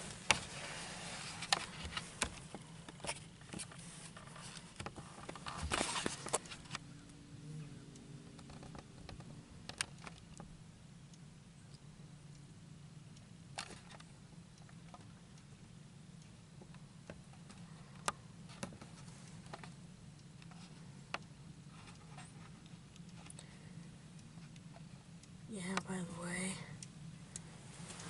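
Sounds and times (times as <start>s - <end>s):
rustling: 0.0s - 10.5s, 27.2s - 28.0s
faint low hum: 0.0s - 28.0s
faint clicks: 1.3s - 12.5s, 13.1s - 28.0s.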